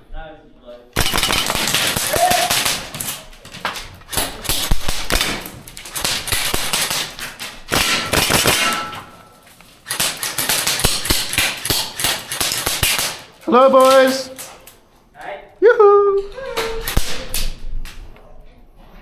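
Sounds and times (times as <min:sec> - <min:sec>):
airsoft gunfire: 0:01.0 - 0:14.8, 0:16.7 - 0:17.8.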